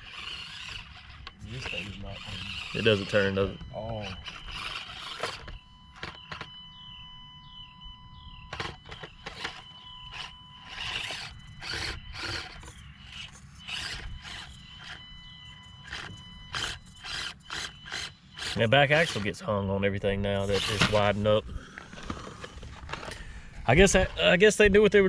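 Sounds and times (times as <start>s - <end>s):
small electric motor whirring: 0.0s - 6.6s, 8.5s - 19.3s, 20.4s - 21.2s
faint high whine: 0.0s - 25.0s
faint falling chirp: 0.1s - 18.2s.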